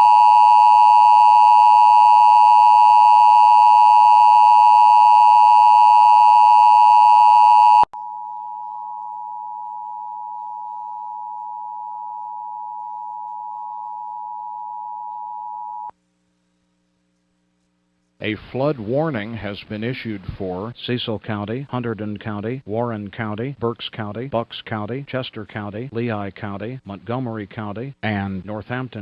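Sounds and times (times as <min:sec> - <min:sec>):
two-tone alarm: 0:00.0 - 0:15.9.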